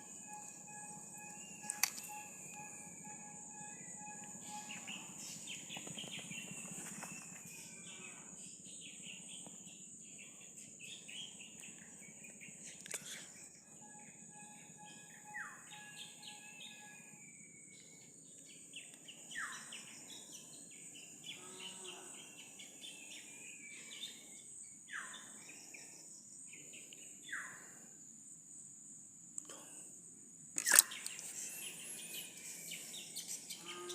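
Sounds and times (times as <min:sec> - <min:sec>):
birds chirping and calling: 0:00.0 - 0:09.6, 0:10.8 - 0:17.1, 0:17.8 - 0:25.9, 0:30.6 - 0:33.9
high insect drone: 0:00.0 - 0:33.9.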